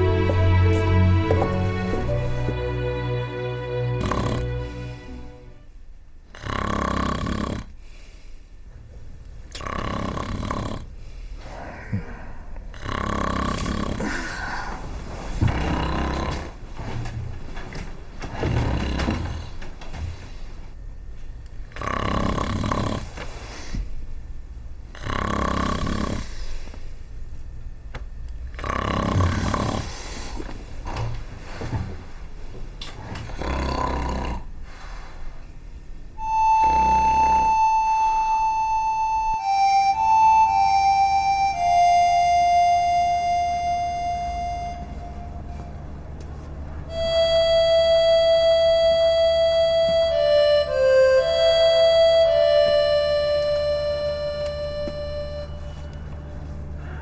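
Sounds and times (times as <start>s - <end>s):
harmonica holding long notes: 0.0s - 5.8s, 36.2s - 57.0s
person snoring loudly: 4.0s - 5.0s, 6.3s - 7.7s, 9.6s - 10.9s, 12.7s - 14.7s, 15.5s - 16.5s, 21.8s - 23.1s, 24.9s - 26.3s, 28.6s - 30.0s, 33.2s - 34.5s, 36.4s - 37.8s.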